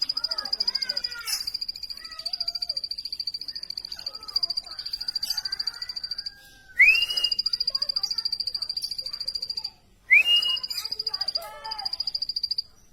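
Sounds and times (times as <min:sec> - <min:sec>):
bird calling high notes: 0:00.0 - 0:12.6
short rising bird whistle: 0:06.8 - 0:07.6, 0:10.1 - 0:10.9.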